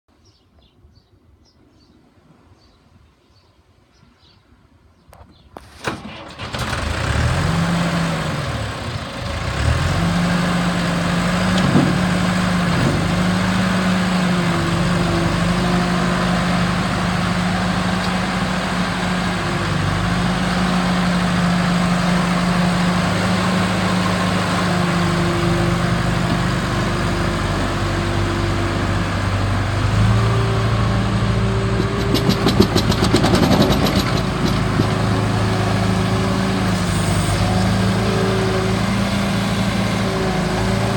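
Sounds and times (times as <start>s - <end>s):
loader engine starting and revving: 5.6s - 40.9s
rapid rattling clicks: 31.8s - 35.1s.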